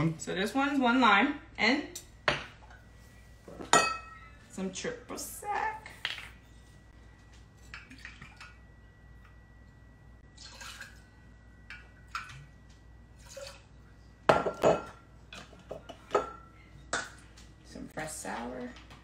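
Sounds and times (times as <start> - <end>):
bottles and glassware clinking: 3.6 - 4.3, 14.3 - 15.0.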